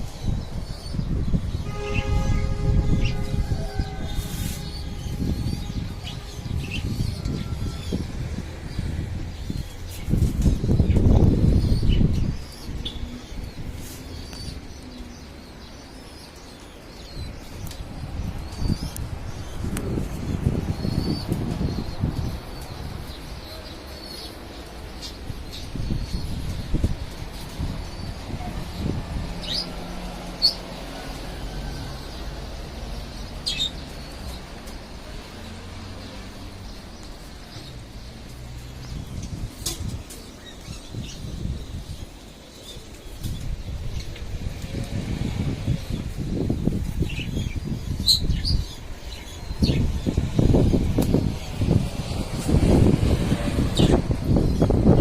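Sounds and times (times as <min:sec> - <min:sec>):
small birds chirping: 0:03.0 - 0:30.8, 0:32.0 - 0:55.0
loud low rushing noise: 0:43.3 - 0:55.0.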